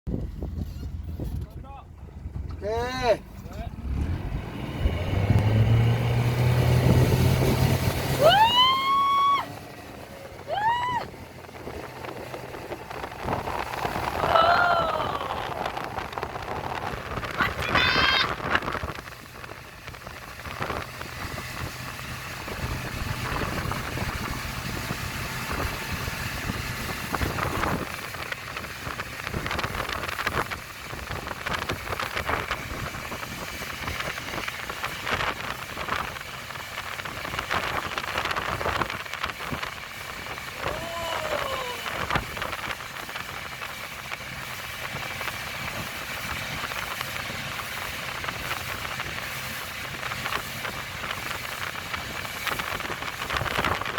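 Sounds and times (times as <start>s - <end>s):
boat engine running: 0.1s - 53.9s
wind on microphone: 0.1s - 53.9s
rising and falling tone: 3.7s - 16.5s
water spray rushing: 4.2s - 53.9s.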